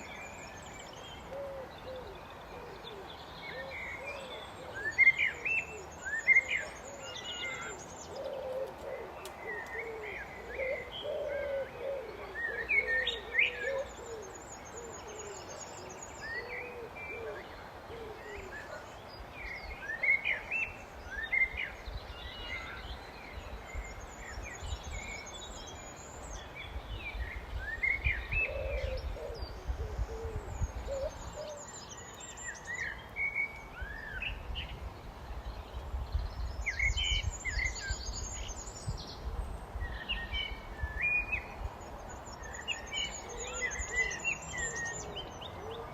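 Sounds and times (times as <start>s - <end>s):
blackbird singing: 0.0s - 34.5s, 35.4s - 45.9s
bird cooing: 1.2s - 15.6s, 16.2s - 18.9s, 27.8s - 31.8s, 43.0s - 45.9s.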